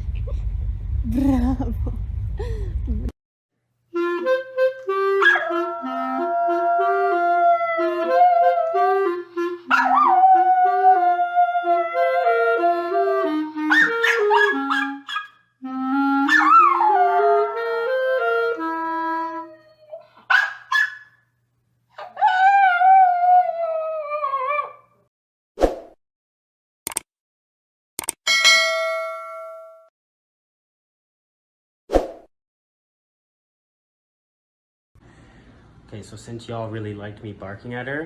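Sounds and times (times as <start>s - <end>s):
simple melody played: 3.9s - 19.7s
dog yelping: 5.2s - 6.2s, 9.7s - 10.5s, 13.7s - 15.4s, 16.3s - 17.1s, 19.9s - 21.2s
dog howling: 5.2s - 8.9s, 9.7s - 12.4s, 16.3s - 17.6s, 22.0s - 24.9s.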